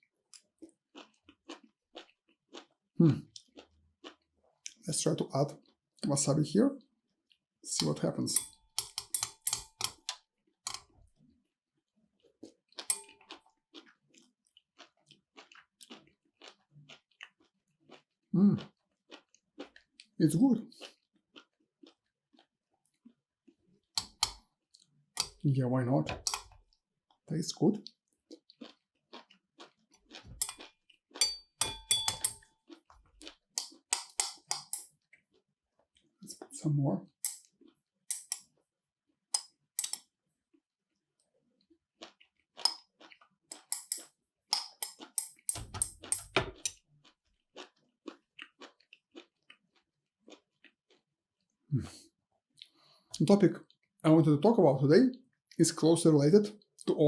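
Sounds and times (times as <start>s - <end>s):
wet chewing: 0.0s - 6.4s, 7.1s - 38.7s, 39.4s - 51.5s
utensils clinking against a dish: 7.8s - 10.9s, 12.9s - 13.2s, 24.0s - 24.4s, 25.2s - 25.4s, 26.1s - 26.5s, 30.4s - 30.6s, 31.2s - 32.5s, 33.6s - 34.9s, 43.5s - 46.8s.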